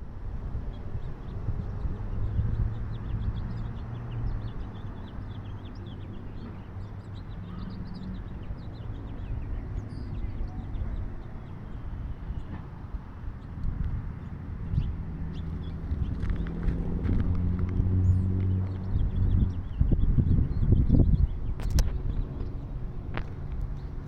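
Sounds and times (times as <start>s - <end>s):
small birds chirping: 0.7s - 24.0s.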